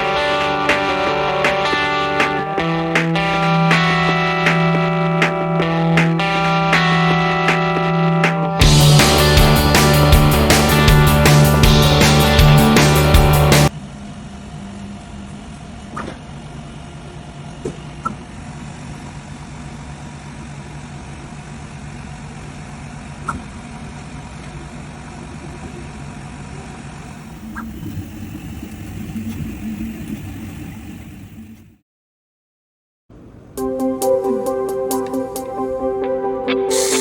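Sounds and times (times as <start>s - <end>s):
machine humming: 27.0s - 31.8s.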